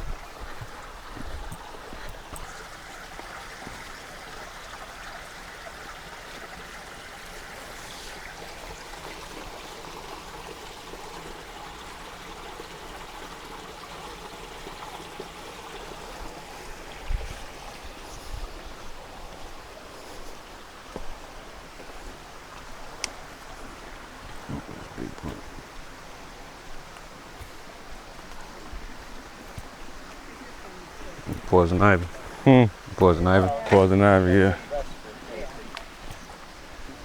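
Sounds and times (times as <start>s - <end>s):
creek water flowing: 0.0s - 37.0s.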